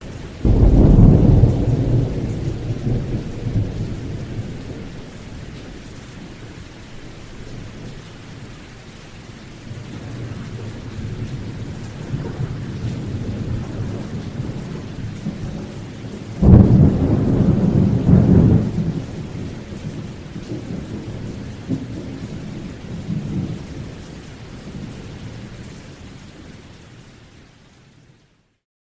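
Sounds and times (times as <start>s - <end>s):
steady rain: 0.0s - 28.6s
thunder rumbling: 0.2s - 7.9s, 9.6s - 24.0s
thunder clap: 0.4s - 5.0s, 9.7s - 22.2s.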